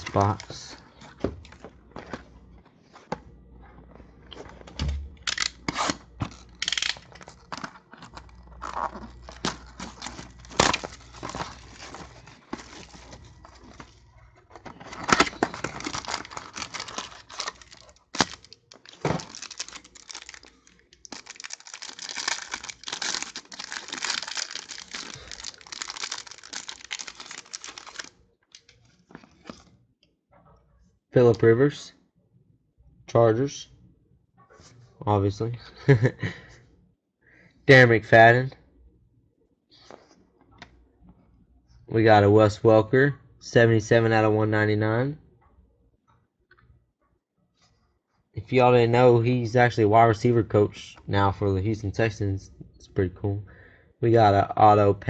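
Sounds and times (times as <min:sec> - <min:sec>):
packaging tearing and crinkling: 0:05.3 - 0:14.0, 0:14.6 - 0:29.6.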